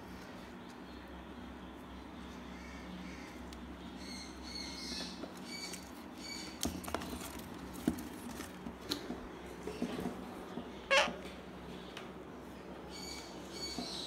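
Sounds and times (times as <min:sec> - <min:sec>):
parrot chicks squeaking: 0:10.8 - 0:11.2.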